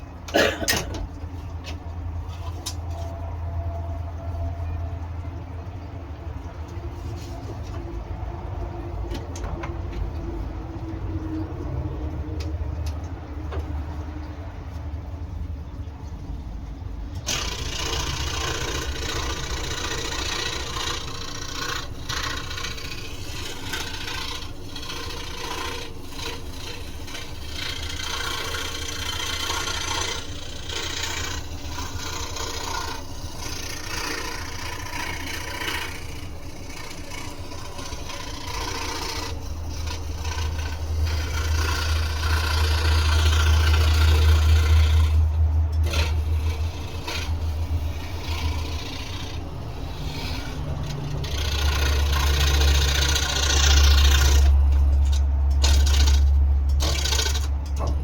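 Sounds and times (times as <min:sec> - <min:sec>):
scroll saw motor hum: 0:17.0 - 0:58.0
saw blade rasping in wood: 0:17.2 - 0:58.0.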